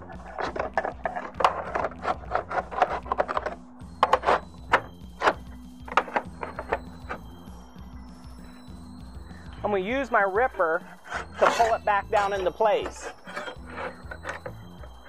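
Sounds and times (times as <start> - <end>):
slate scraping and clicking: 0.0 - 7.2, 11.1 - 11.8, 12.9 - 14.6.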